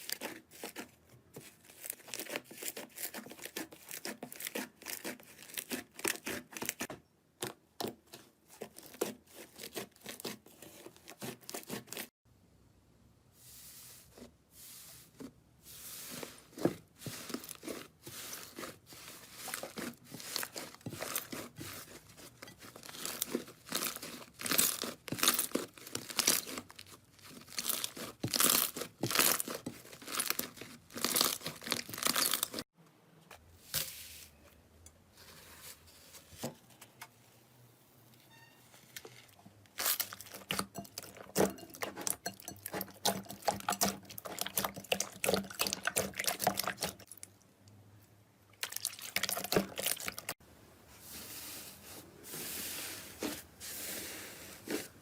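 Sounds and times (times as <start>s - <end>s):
slime crackling and popping: 22.8s - 32.6s.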